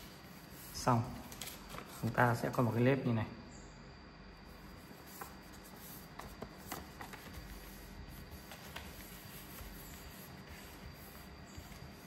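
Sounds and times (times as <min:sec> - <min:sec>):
paper rustling and crackling: 0:00.0 - 0:02.4, 0:04.8 - 0:12.0.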